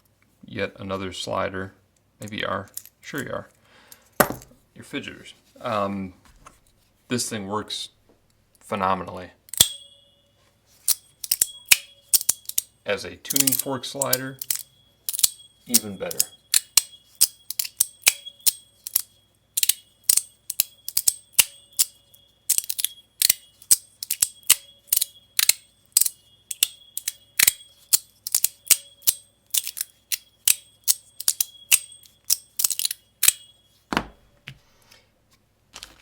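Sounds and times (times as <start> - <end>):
tuning forks ringing high tone: 9.6 - 33.9.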